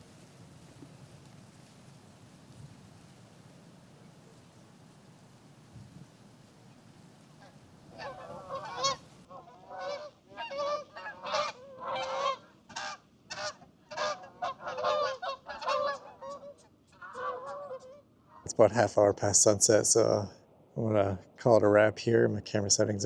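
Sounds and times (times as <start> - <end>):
birds grunting calls: 6.9 - 18.5.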